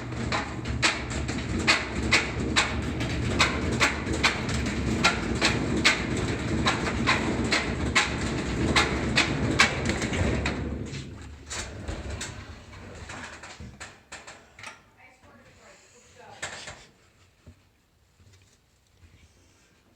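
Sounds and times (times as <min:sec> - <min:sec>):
washing machine drum knocking: 0:00.0 - 0:11.5
washing machine spin rumble: 0:00.0 - 0:13.8.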